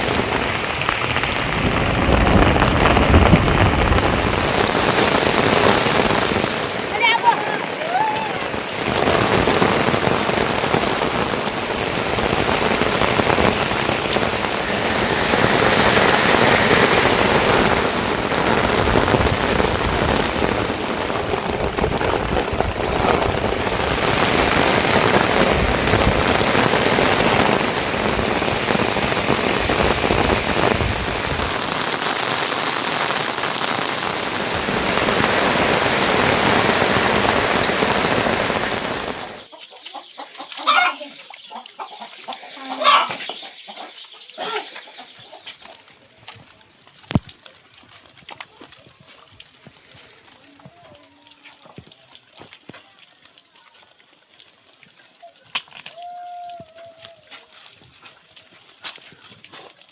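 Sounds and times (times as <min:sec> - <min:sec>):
heavy rain falling: 0:00.0 - 0:40.2, 0:42.2 - 0:59.9.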